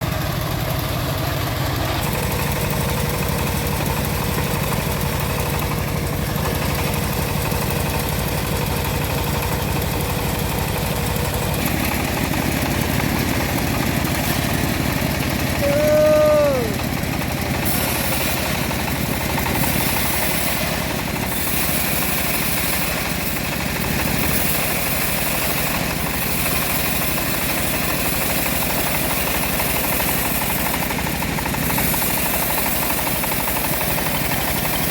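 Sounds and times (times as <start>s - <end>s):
bandsaw mill sawing log: 0.0s - 34.9s
short falling call: 15.6s - 16.8s.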